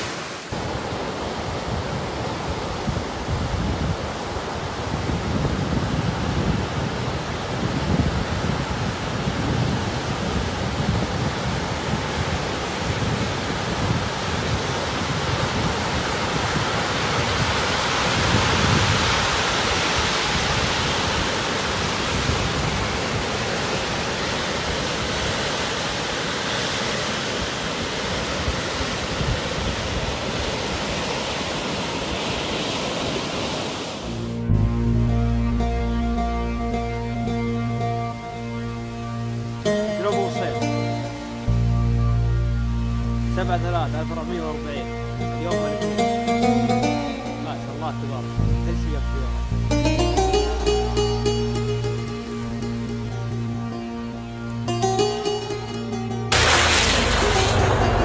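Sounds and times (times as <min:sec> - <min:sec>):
wind noise on microphone: 0:00.5 - 0:25.9, 0:27.4 - 0:37.9
heavy rain: 0:56.3 - 0:58.0.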